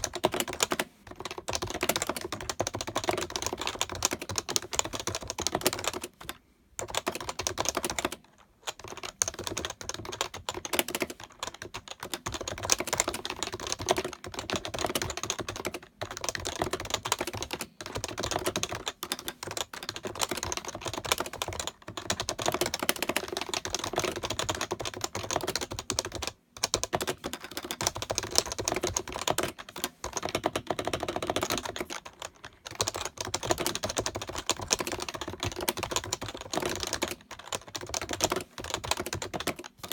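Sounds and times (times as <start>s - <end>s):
fast keyboard typing: 0.0s - 39.9s.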